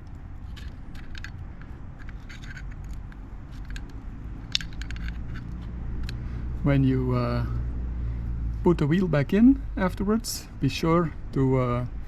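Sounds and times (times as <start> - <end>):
screwdrivers clicking and scraping metal: 0.0 - 6.2.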